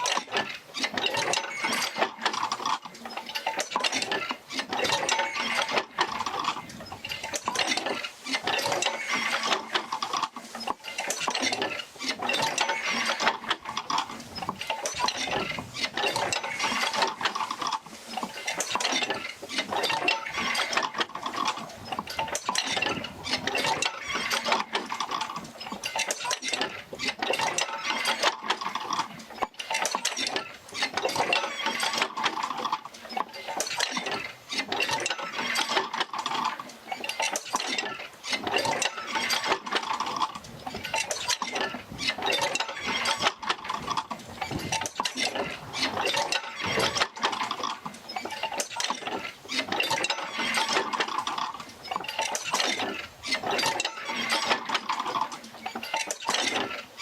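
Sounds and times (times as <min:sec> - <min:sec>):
metallic clanks and knocks: 0:00.0 - 0:56.8.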